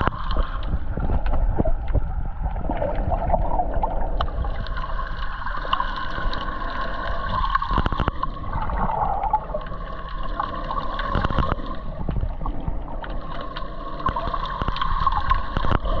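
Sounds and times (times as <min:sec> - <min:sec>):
low rumble: 0:00.0 - 0:10.9
water sloshing and gurgling: 0:00.0 - 0:16.0.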